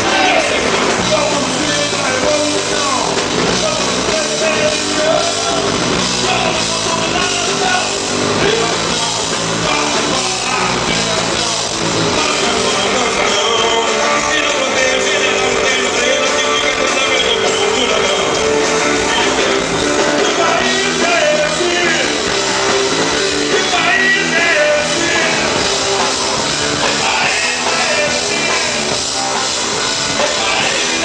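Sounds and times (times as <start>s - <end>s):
person singing: 0.0s - 22.4s, 23.1s - 25.9s, 26.8s - 29.2s, 30.1s - 31.0s
live rock band playing: 0.0s - 31.0s.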